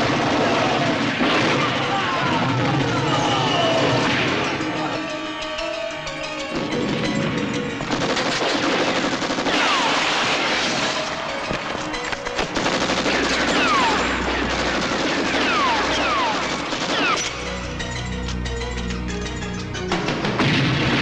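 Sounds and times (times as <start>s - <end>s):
rapid gunfire: 0.0s - 3.0s, 7.9s - 17.5s
soundtrack music: 0.0s - 21.0s.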